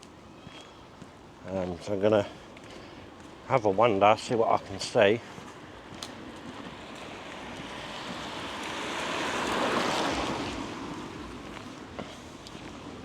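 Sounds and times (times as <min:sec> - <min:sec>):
vehicle tyre hiss on wet road: 0:06.7 - 0:12.5.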